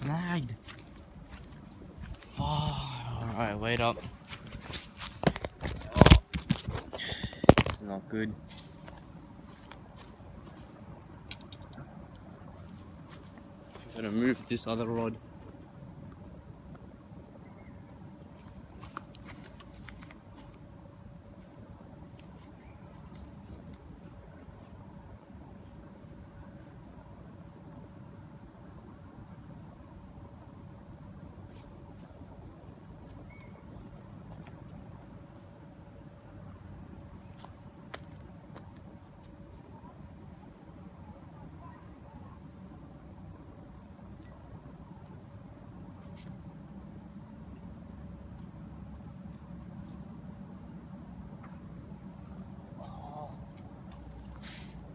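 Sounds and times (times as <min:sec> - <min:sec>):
insect high trill: 0:00.0 - 0:08.6, 0:10.2 - 0:16.0, 0:17.2 - 0:18.9, 0:20.7 - 0:22.9, 0:24.5 - 0:25.1, 0:30.8 - 0:31.2, 0:32.6 - 0:34.5, 0:35.6 - 0:36.2, 0:38.9 - 0:39.3, 0:43.3 - 0:45.3, 0:46.8 - 0:47.4, 0:48.2 - 0:49.1, 0:51.3 - 0:53.8
short high cricket chirps: 0:00.0 - 0:54.9.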